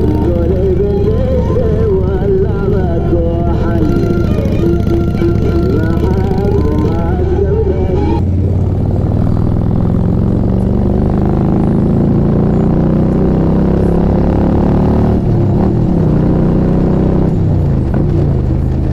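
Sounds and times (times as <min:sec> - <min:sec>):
motorcycle engine accelerating: 0:00.0 - 0:18.9.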